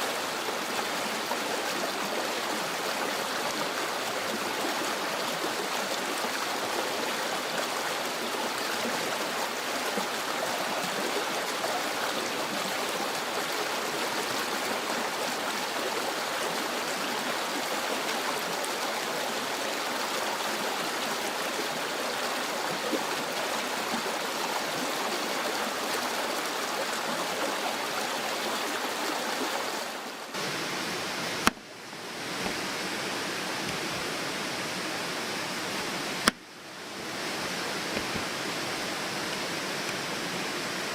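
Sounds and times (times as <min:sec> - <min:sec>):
mountain stream rushing: 0:00.0 - 0:40.9.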